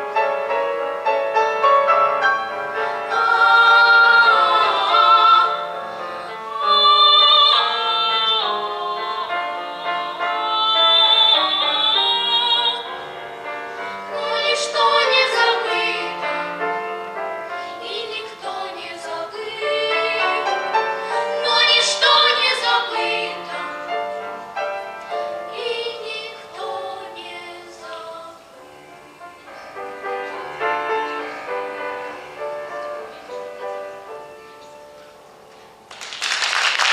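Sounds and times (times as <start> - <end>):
musical accompaniment: 0.0 - 36.9
children singing in unison: 2.7 - 13.0, 14.1 - 16.6, 17.7 - 24.2, 25.4 - 28.6.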